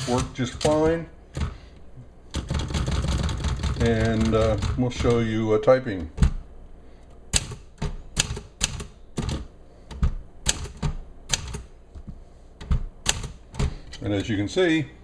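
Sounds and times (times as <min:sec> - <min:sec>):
manual typewriter typing: 0:02.3 - 0:05.2, 0:07.3 - 0:09.5, 0:10.4 - 0:11.7, 0:12.6 - 0:13.6.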